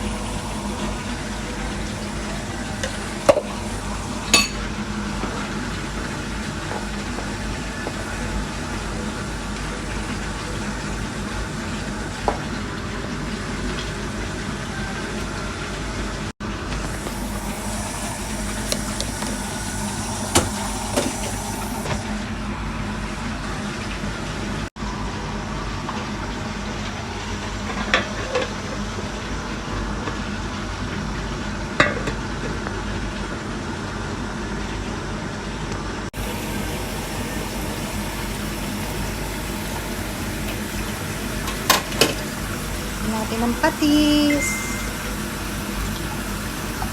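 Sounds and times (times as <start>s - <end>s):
fish sizzling in a pan: 16.5s - 22.0s, 36.2s - 46.9s.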